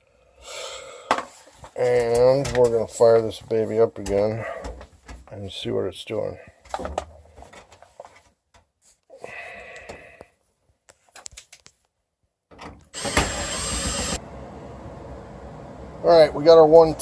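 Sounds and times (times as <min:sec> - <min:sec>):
power drill running: 0:13.0 - 0:14.3
low steady hum: 0:14.2 - 0:17.0.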